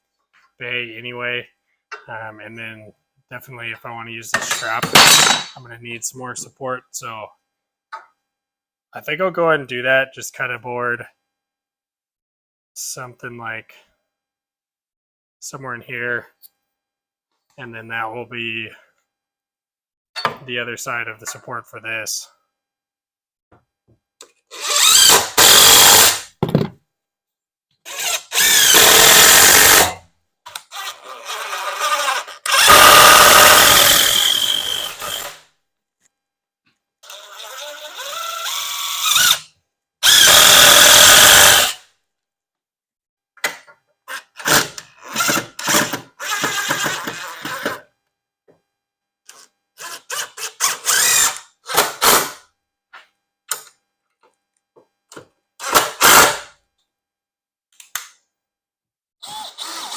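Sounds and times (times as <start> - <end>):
power tool bursts: 24.6 - 26.3, 27.9 - 30.0, 31.4 - 35.4, 37.2 - 39.4, 40.0 - 41.8, 44.4 - 47.2, 50.1 - 52.4, 55.6 - 56.4, 59.2 - 59.9.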